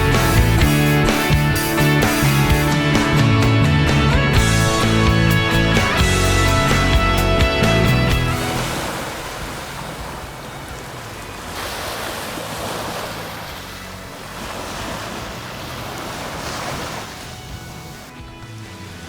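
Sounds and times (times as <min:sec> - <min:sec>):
small waves washing onto beach: 0:06.6 - 0:19.0.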